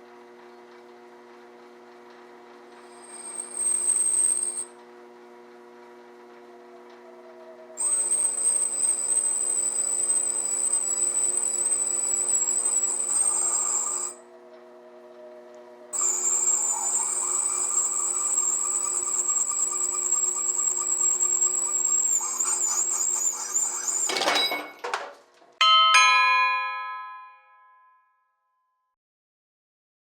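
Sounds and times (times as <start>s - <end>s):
metal lathe motor hum: 0.2s - 24.5s
high-pitched cutting whine: 2.8s - 4.8s, 6.4s - 24.8s.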